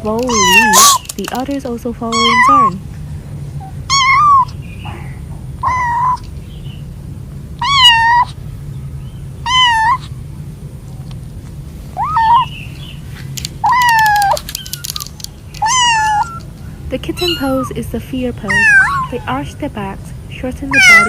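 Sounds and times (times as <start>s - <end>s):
kittens meowing: 0.0s - 2.8s, 3.6s - 6.6s, 7.6s - 8.4s, 9.4s - 10.2s, 11.9s - 19.8s, 20.4s - 21.0s.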